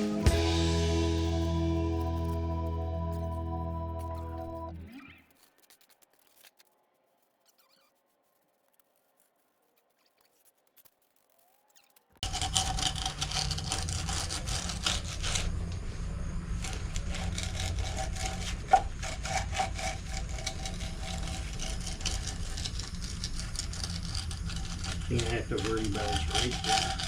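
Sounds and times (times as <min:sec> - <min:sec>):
steady low rumble: 0:00.0 - 0:04.7
scraping on hard surface: 0:12.2 - 0:27.0.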